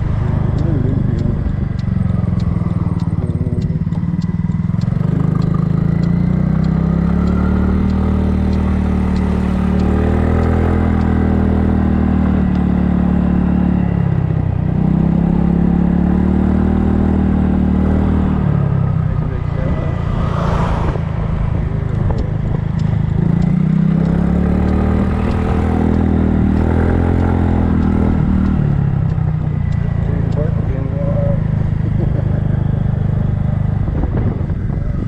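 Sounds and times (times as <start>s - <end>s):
faint light ticking: 0.0s - 14.4s, 21.2s - 33.9s
scooter engine running: 0.0s - 20.3s, 21.0s - 35.0s.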